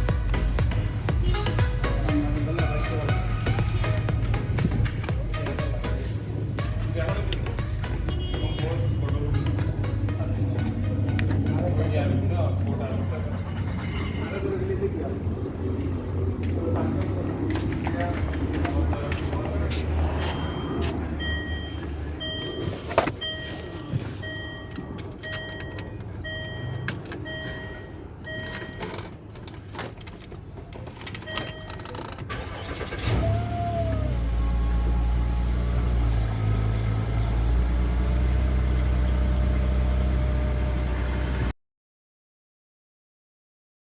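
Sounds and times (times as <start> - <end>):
car engine cranking and idling: 0.0 - 41.5
dashboard warning chime beeping: 20.3 - 29.1, 31.2 - 32.9.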